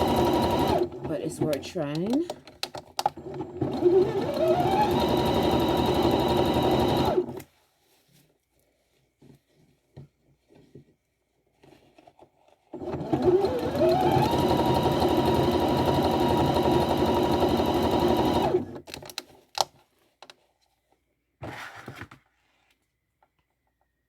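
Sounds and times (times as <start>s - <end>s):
sewing machine whine: 0.0s - 1.5s, 3.1s - 7.4s, 12.8s - 18.9s.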